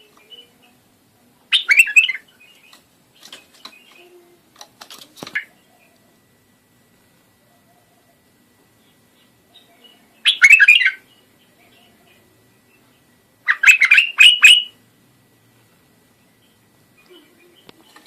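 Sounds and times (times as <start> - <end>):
bird singing whistled notes: 1.5 - 2.5.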